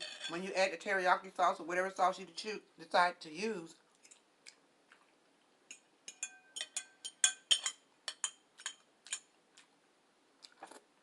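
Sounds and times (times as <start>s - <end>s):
utensil clinking against dish: 5.7s - 9.3s.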